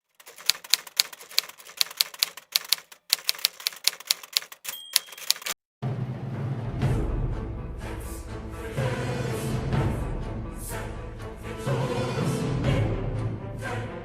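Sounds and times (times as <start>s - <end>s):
typewriter keys clacking: 0.0s - 5.6s
typewriter bell ring: 0.2s - 5.6s
music: 5.8s - 14.0s.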